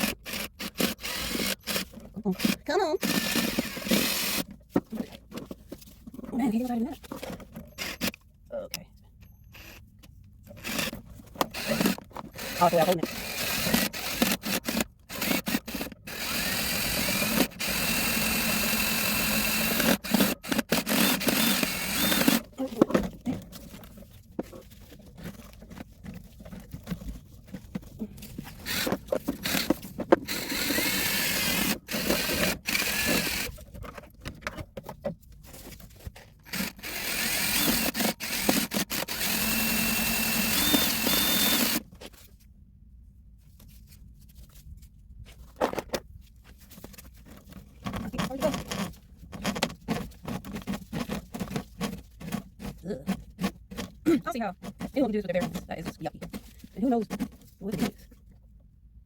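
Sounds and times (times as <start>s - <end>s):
cordless drill spinning drain snake: 0.0s - 4.6s, 7.4s - 8.2s, 10.6s - 24.0s, 24.8s - 33.7s, 36.4s - 41.9s
knocks and scrapes: 4.4s - 7.9s, 22.2s - 30.6s, 33.4s - 36.5s, 43.4s - 58.4s.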